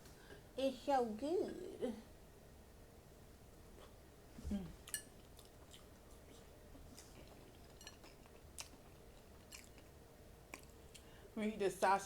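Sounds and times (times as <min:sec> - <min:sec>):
person humming: 0:04.4 - 0:04.8
person chewing food: 0:04.8 - 0:11.2.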